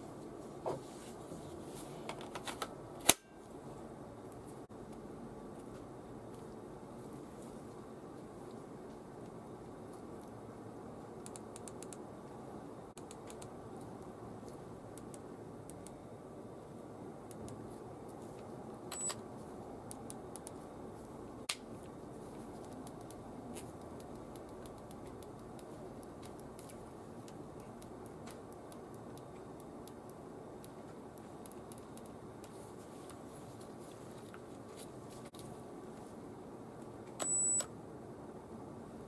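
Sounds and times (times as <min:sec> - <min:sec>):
steady low hum: 0:00.0 - 0:39.0
light clicks and taps: 0:21.8 - 0:35.5.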